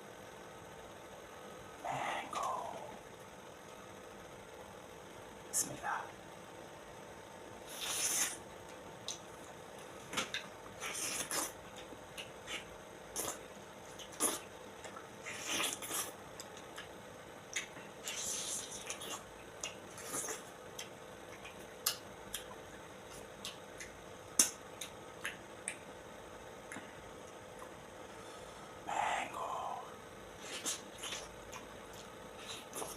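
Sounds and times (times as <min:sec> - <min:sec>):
wet squishing and sucking mouth sounds: 0:07.6 - 0:09.2, 0:10.2 - 0:16.9, 0:17.5 - 0:25.8, 0:28.9 - 0:32.9
sharp mouth clicks: 0:17.5 - 0:25.9.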